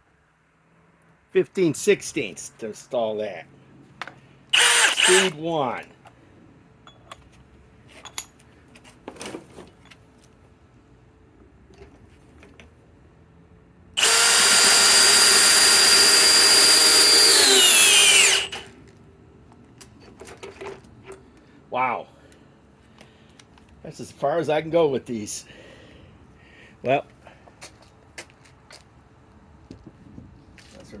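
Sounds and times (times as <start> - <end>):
drill handling clicks: 4.5 - 5.4, 14.0 - 18.7
drill motor whining under load: 4.5 - 5.4, 14.0 - 18.7.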